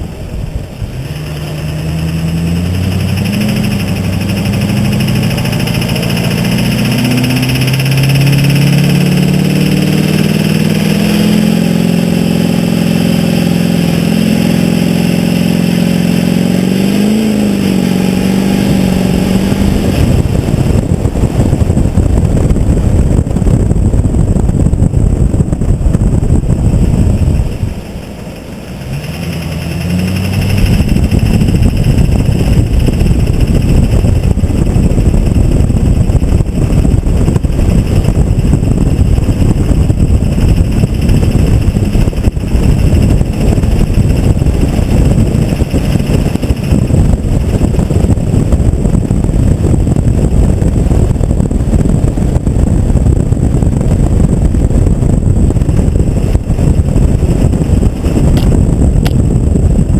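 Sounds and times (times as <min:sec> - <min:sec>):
diesel engine running: 0:00.0 - 0:59.9
high whine: 0:00.0 - 0:59.9.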